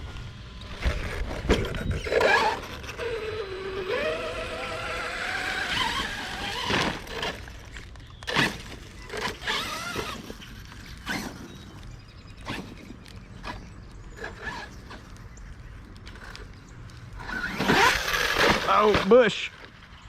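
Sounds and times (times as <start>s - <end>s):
electric motor whining: 0.0s - 19.2s
toy truck knocks and clatters: 17.2s - 19.7s.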